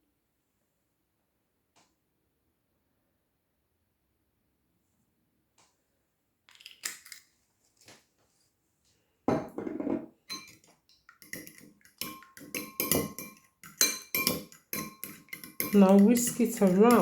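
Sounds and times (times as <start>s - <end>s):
fork beating eggs on plate: 10.3s - 17.0s.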